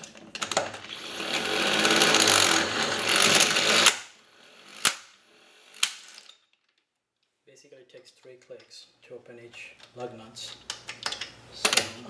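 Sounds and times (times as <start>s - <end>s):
impact wrench rattling: 0.0s - 6.8s.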